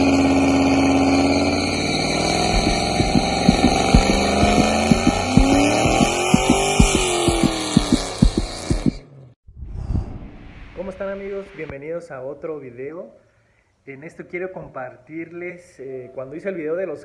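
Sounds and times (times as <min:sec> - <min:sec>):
car engine revving: 0:00.0 - 0:09.3.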